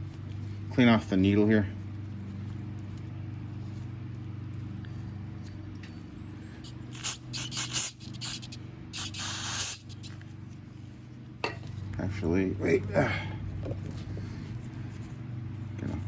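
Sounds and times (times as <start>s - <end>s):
steady low hum: 0.0s - 16.0s
aerosol spray hissing: 6.6s - 10.2s.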